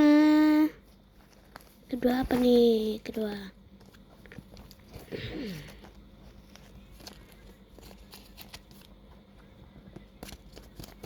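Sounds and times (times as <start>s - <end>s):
paper packets rustling: 3.8s - 9.1s, 10.0s - 11.0s.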